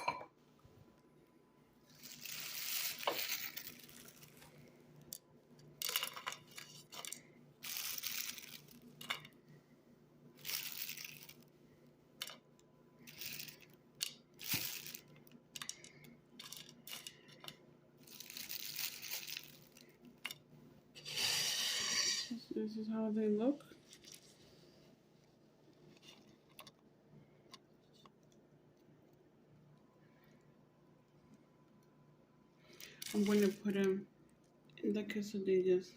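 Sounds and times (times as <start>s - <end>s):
crinkly rustling of grasshoppers: 1.9s - 4.7s, 5.8s - 9.4s, 10.4s - 11.5s, 13.0s - 16.0s, 16.6s - 20.2s, 23.7s - 26.8s, 32.7s - 34.0s.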